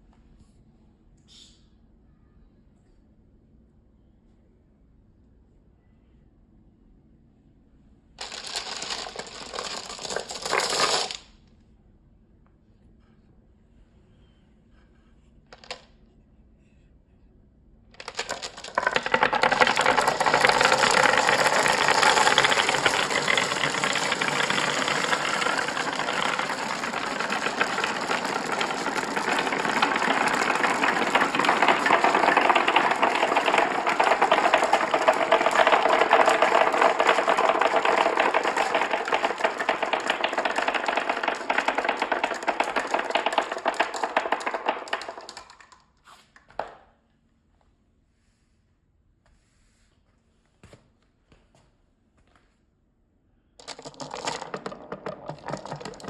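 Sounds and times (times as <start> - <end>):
marbles rattling down a track: 8.2 - 11.3, 15.6 - 15.8, 18.0 - 45.8, 53.6 - 56.0.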